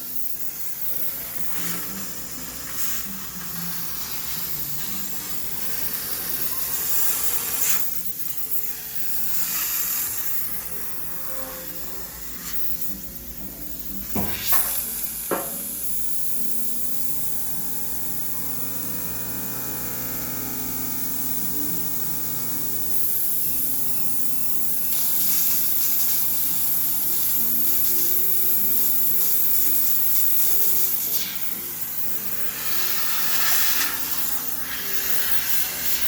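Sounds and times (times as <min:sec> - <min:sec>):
steam hissing: 0:00.1 - 0:16.3, 0:24.9 - 0:36.0.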